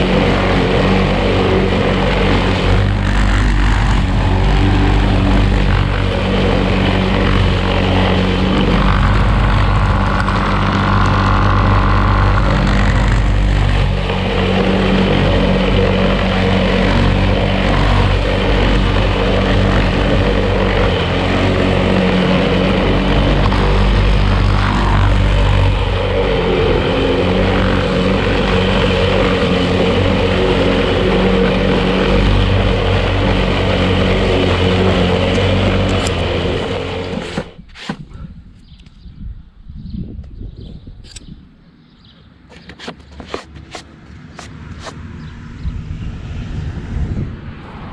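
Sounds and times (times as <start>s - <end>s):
lawn mower engine running: 0.0s - 38.0s, 42.3s - 45.9s.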